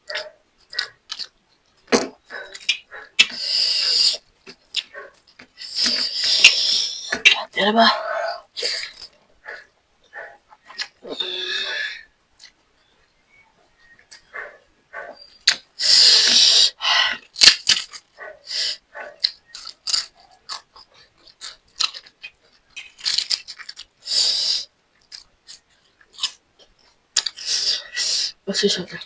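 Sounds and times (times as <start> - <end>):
person chewing food: 19.0 - 24.0, 25.0 - 27.5.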